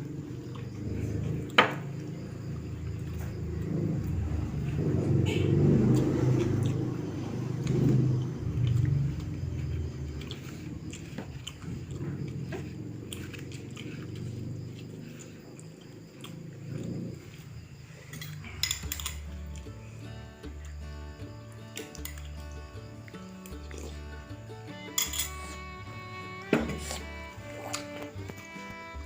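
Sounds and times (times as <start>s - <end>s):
person chewing food: 5.8s - 19.8s, 23.1s - 25.7s.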